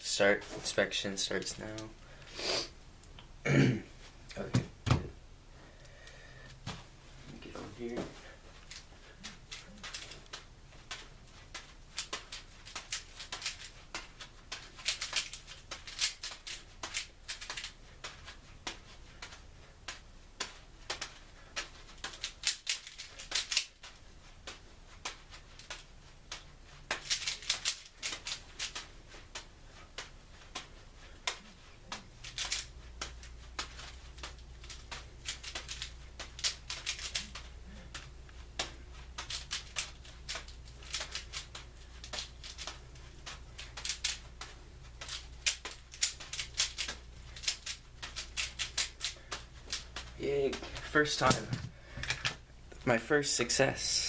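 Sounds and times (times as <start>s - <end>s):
puzzle cube plastic clicks: 14.8s - 17.7s, 22.0s - 23.7s, 26.9s - 28.8s, 32.2s - 32.7s, 34.6s - 37.5s, 39.2s - 42.8s, 43.6s - 44.2s, 45.0s - 49.9s.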